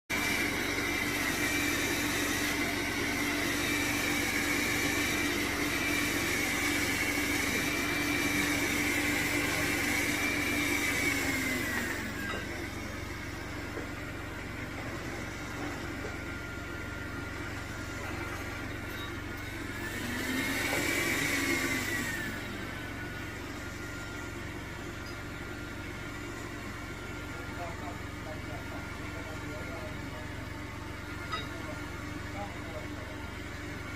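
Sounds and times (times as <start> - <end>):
robot vacuum motor whining: 0.1 - 25.2.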